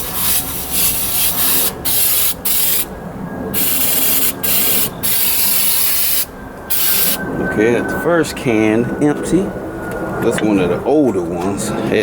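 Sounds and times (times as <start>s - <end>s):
aerosol can spraying: 0.0s - 2.9s, 3.6s - 7.2s.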